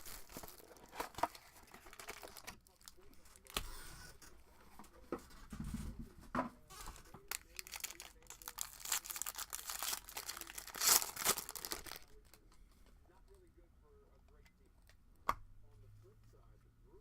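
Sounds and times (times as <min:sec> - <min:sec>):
packaging torn and crinkled: 0:00.0 - 0:03.5, 0:07.2 - 0:12.4.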